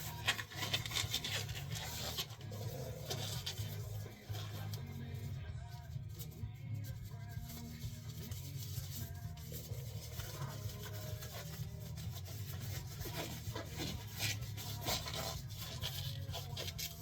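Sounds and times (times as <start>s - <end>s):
gloves rubbing and rustling: 0.0s - 17.0s.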